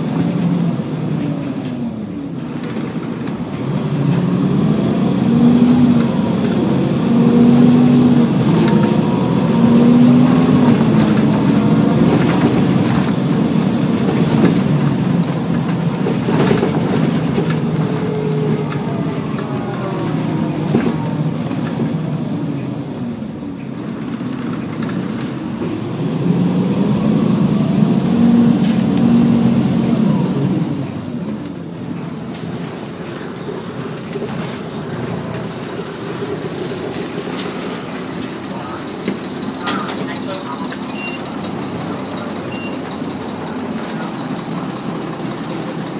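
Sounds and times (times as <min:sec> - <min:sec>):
bus diesel engine accelerating: 0:00.0 - 0:45.9
bus knocks: 0:05.4 - 0:22.2, 0:31.4 - 0:45.9.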